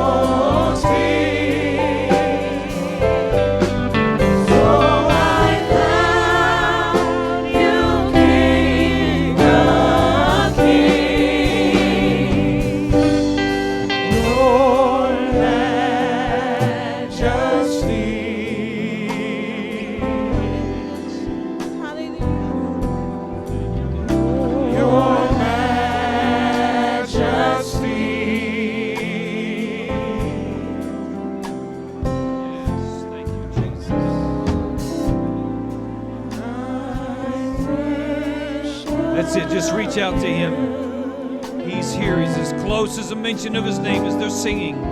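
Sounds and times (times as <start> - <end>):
choir singing gospel: 0.0 - 44.9.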